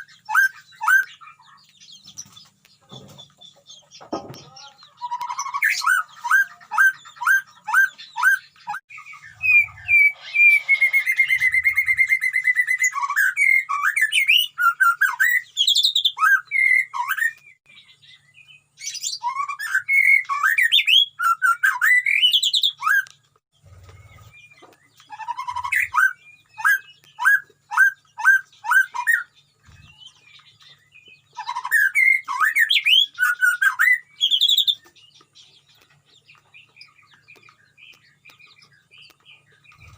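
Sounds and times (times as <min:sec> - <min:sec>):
bird singing fluty whistles: 0:00.0 - 0:01.1, 0:05.0 - 0:17.6, 0:18.9 - 0:23.1, 0:25.1 - 0:30.3, 0:30.9 - 0:34.9.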